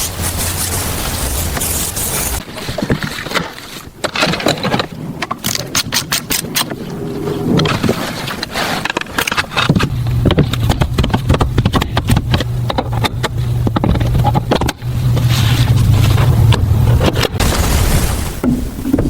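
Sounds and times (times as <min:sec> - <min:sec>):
car engine running: 0:00.0 - 0:02.4, 0:09.8 - 0:17.5
sharp clicks and knocks: 0:08.9 - 0:17.4.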